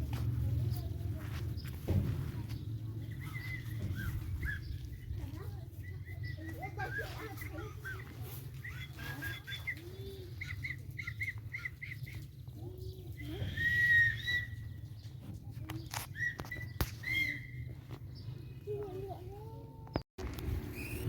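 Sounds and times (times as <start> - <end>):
high squeal: 20.6 - 21.0.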